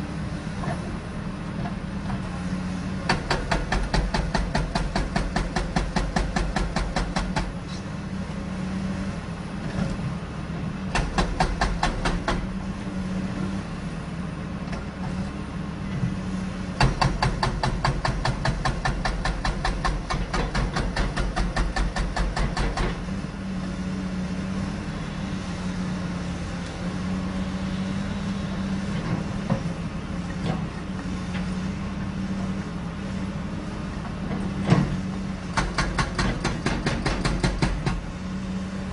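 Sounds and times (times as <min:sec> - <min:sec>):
diesel engine running: 0:00.0 - 0:38.9
hydraulic breaker hammering: 0:03.1 - 0:07.5, 0:10.9 - 0:12.5, 0:35.5 - 0:38.0.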